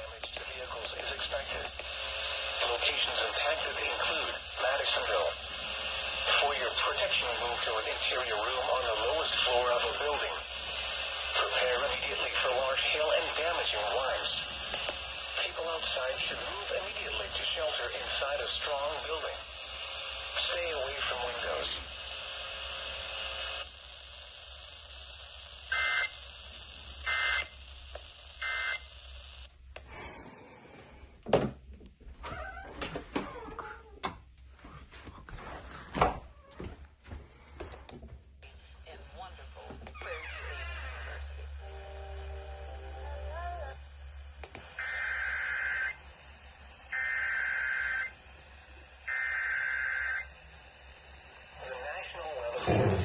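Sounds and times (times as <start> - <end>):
radio hiss: 0.0 - 31.0, 38.4 - 53.0
screeching digital data tones: 44.8 - 46.0.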